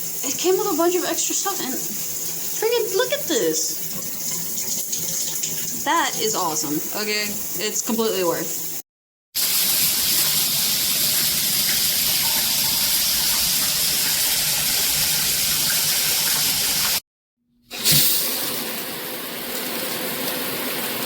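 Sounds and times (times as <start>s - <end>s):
shower spray hissing: 0.0s - 8.8s.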